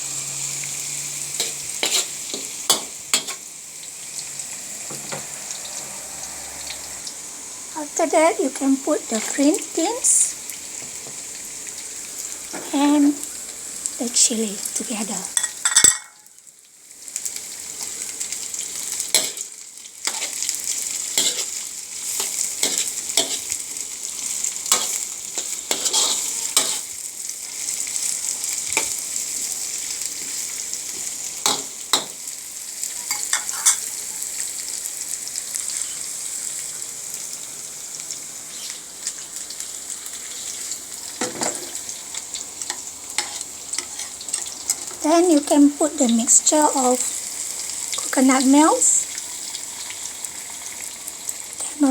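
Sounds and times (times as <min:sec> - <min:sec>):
vegetables sizzling in oil: 0:00.0 - 0:51.9
spatula scraping pan: 0:01.3 - 0:03.4, 0:19.1 - 0:23.6, 0:24.2 - 0:27.0, 0:33.0 - 0:34.0, 0:42.7 - 0:45.5.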